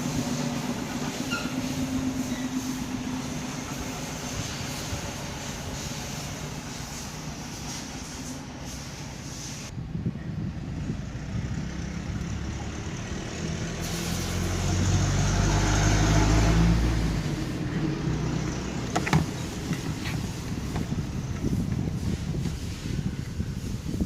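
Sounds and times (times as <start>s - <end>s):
motor vehicle passing by: 10.4s - 23.7s.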